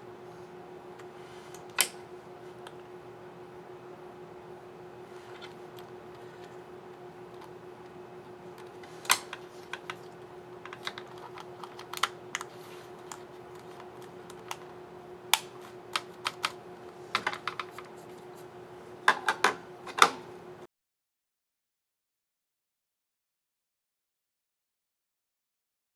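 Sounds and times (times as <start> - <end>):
steady low hum: 0.0 - 20.7
laptop keyboard keys clicking: 10.6 - 16.6.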